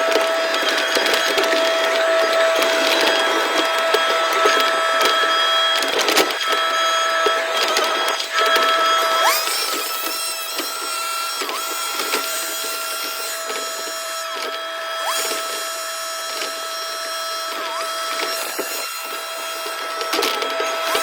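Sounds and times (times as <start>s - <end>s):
clicking and scraping: 0.0s - 21.0s
excavator whine: 0.0s - 21.0s.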